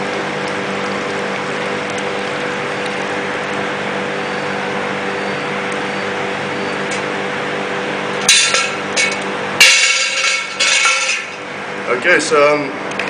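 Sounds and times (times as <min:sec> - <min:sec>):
motor hum: 0:00.0 - 0:13.0
metallic clanks with ringing: 0:08.2 - 0:11.4.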